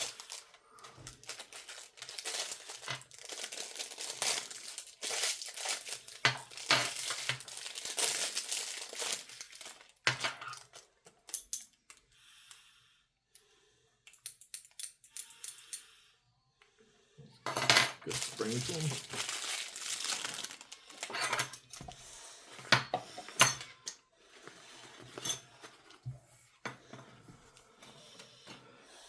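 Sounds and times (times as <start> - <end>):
plastic packaging crinkling and tearing: 0.0 - 11.2, 18.1 - 21.7.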